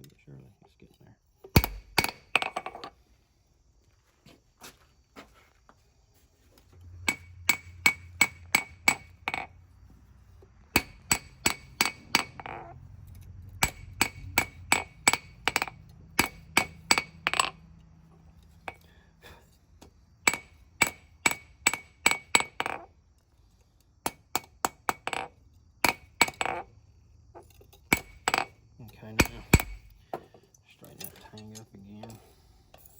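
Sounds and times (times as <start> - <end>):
hammer striking steel on anvil: 1.6 - 2.5, 7.0 - 9.5, 10.8 - 12.6, 13.6 - 17.6, 20.2 - 22.6, 27.9 - 28.5, 29.2 - 30.0.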